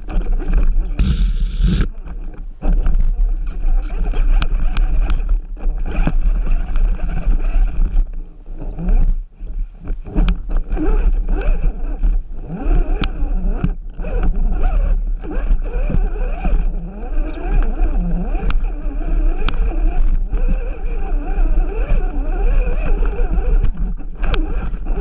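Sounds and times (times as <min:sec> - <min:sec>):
low rumble: 0:00.0 - 0:08.4
electric motor whining: 0:00.0 - 0:09.1, 0:09.8 - 0:25.0
tires and chassis knocking rocks: 0:00.0 - 0:09.2, 0:09.8 - 0:25.0.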